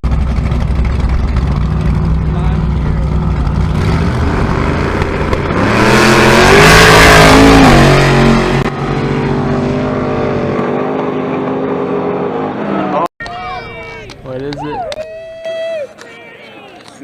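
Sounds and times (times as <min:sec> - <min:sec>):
steady engine drone: 0:00.0 - 0:13.1
race car engine passing: 0:01.6 - 0:13.1.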